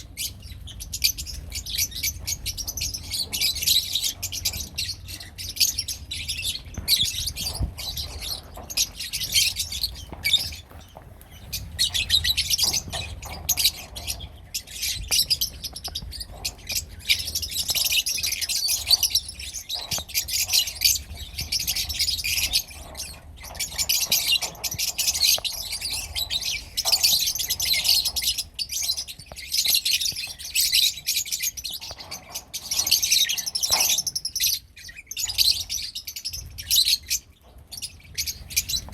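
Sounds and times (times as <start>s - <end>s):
lovebirds chattering: 0.0s - 38.9s.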